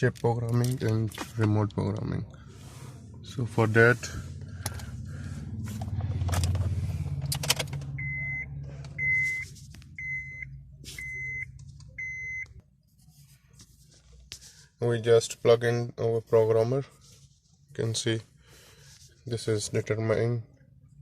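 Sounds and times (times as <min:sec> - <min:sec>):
low steady hum: 0:00.0 - 0:21.0
short electronic beeps: 0:08.0 - 0:09.4, 0:10.0 - 0:12.5.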